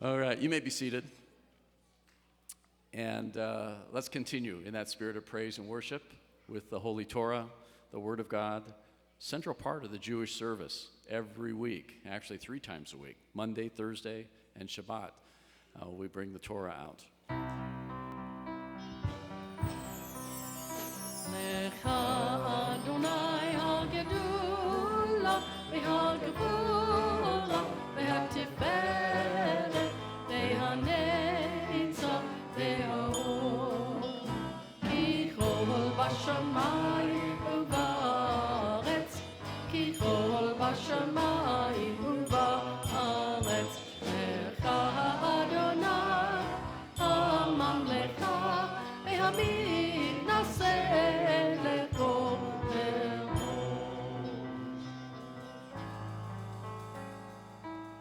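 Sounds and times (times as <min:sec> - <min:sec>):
live worship music: 0:17.3 - 0:58.0
percussion strikes: 0:19.0 - 0:58.0.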